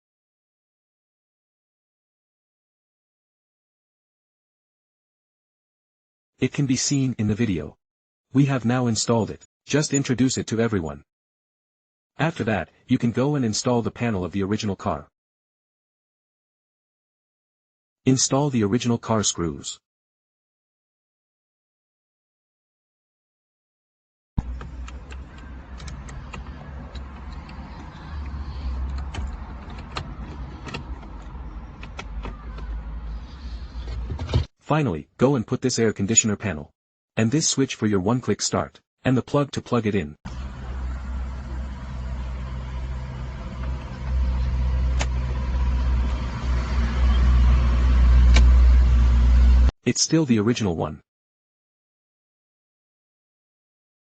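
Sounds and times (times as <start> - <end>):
sharp clicks: 24.4 - 32.7
car engine idling: 24.4 - 32.8, 40.3 - 49.7
steady low rumble: 40.3 - 49.7.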